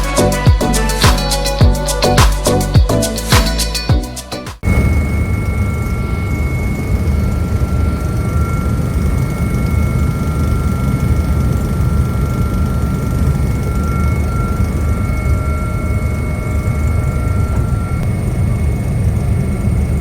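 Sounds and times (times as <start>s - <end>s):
high-pitched tones: 0.0s - 8.6s.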